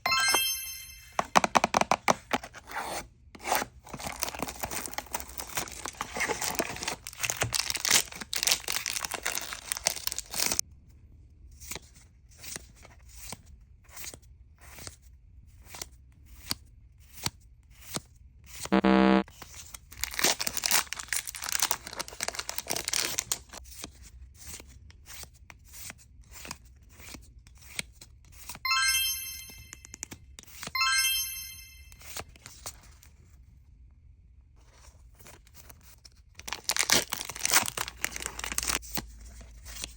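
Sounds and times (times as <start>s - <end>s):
short pitched tone: 0.1s - 1.2s, 18.7s - 19.2s, 28.7s - 30.0s, 30.8s - 32.0s
foil wrapper crinkling: 4.0s - 10.6s, 20.0s - 23.6s, 36.4s - 38.8s.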